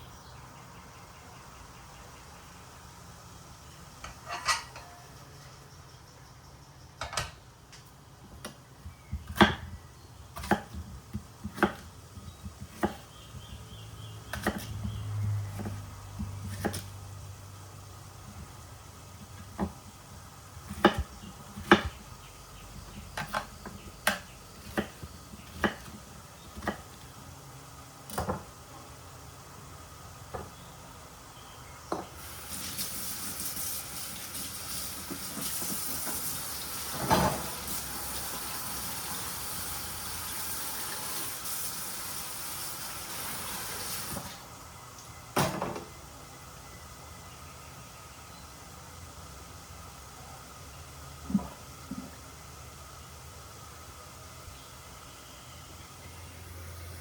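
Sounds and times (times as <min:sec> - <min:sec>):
dishes and utensils clinking: 0:04.0 - 0:05.1
steady hiss: 0:30.9 - 0:44.6.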